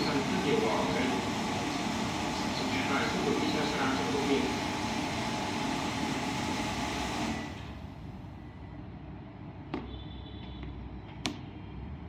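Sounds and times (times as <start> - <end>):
television soundtrack: 0.0 - 7.4.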